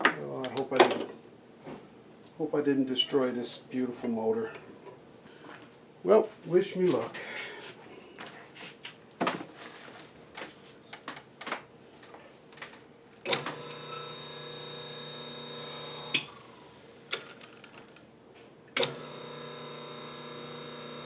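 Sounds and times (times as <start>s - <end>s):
electric motor humming: 13.3s - 16.9s, 18.8s - 21.0s.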